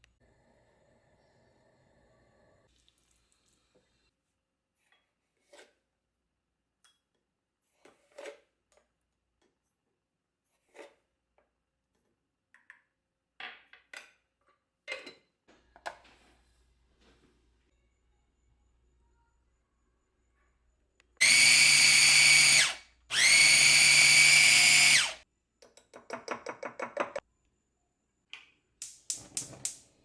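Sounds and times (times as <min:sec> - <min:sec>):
kitchen taps and scrapes: 0:25.6 - 0:27.2.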